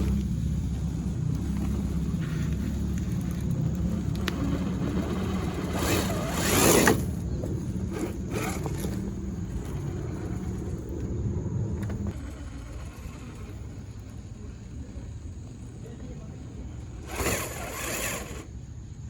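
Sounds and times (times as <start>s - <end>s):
electric motor whirring: 1.3s - 11.1s, 11.8s - 15.4s, 16.5s - 18.6s
scraping: 1.3s - 11.1s, 16.9s - 18.5s.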